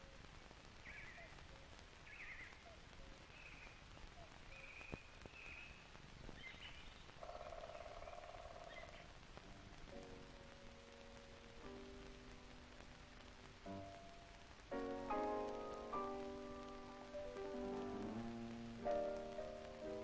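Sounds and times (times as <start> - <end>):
faint birdsong chirps: 0.0 - 14.7
light hiss: 0.0 - 20.0
quiet music with held notes: 9.4 - 20.0.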